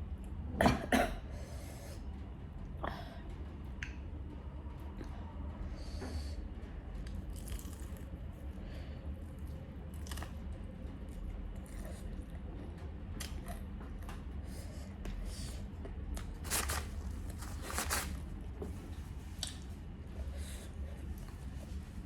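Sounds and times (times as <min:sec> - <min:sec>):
person eating crunchy food: 0:07.4 - 0:08.1, 0:09.9 - 0:10.3, 0:16.2 - 0:18.3.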